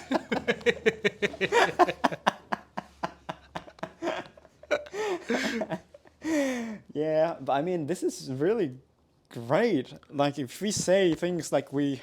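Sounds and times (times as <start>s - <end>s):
men laughing: 0.0s - 6.7s.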